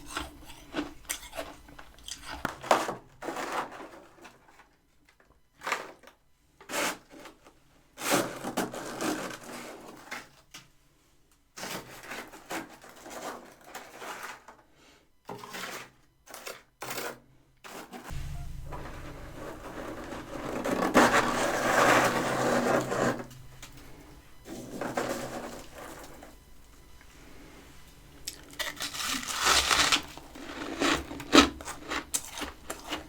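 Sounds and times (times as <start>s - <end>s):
crunchy chewing of frost: 0.0s - 3.0s, 28.2s - 33.0s.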